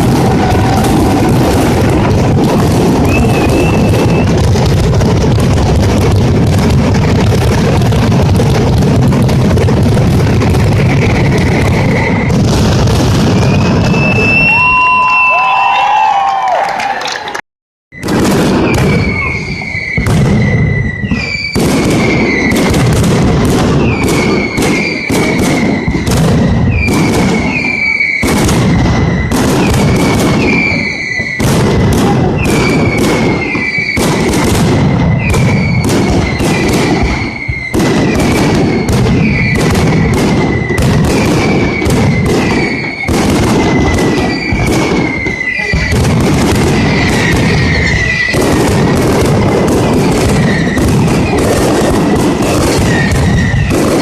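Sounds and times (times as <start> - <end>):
firecracker bangs: 0.0 - 16.6, 17.9 - 54.0
short falling whistles: 13.9 - 16.5.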